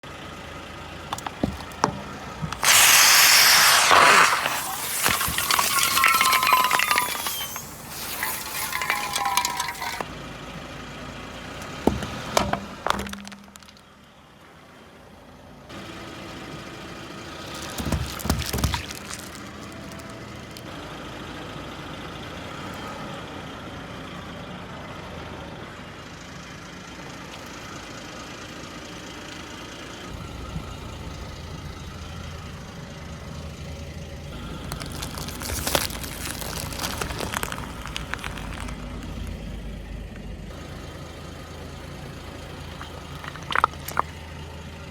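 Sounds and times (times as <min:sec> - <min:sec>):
car engine running: 0:00.1 - 0:02.7, 0:29.7 - 0:44.9
objects crunching under car tyres: 0:01.0 - 0:10.1, 0:11.5 - 0:14.0, 0:17.3 - 0:20.7, 0:34.3 - 0:39.6, 0:42.6 - 0:44.2
glass shattering: 0:01.2 - 0:10.0, 0:17.6 - 0:19.6, 0:34.8 - 0:38.7, 0:42.8 - 0:44.1.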